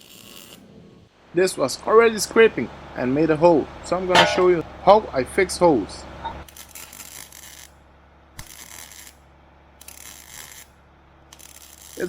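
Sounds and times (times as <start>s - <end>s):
mig welding bursts: 0.0s - 0.6s, 8.4s - 9.2s, 9.8s - 10.7s, 11.3s - 12.0s.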